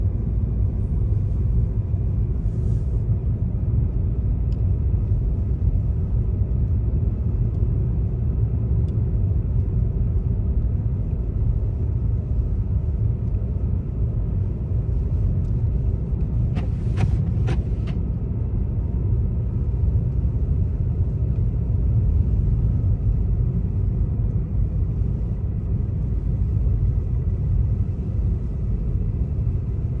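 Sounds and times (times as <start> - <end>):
car driving rumble: 0.0 - 30.0.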